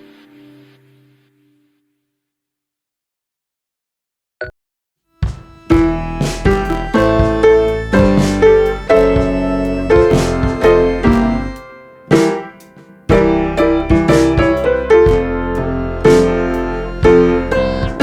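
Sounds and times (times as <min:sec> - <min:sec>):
piano music with light beat: 0:05.2 - 0:18.0.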